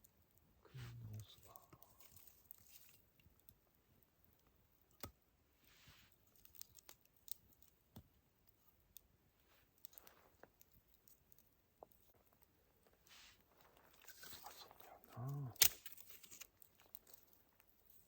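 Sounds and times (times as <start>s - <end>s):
campfire snapping and clicking: 1.6s - 3.7s, 4.3s - 5.2s, 6.1s - 9.1s, 9.7s - 18.0s
soft rustles: 5.6s - 6.9s, 9.3s - 18.0s.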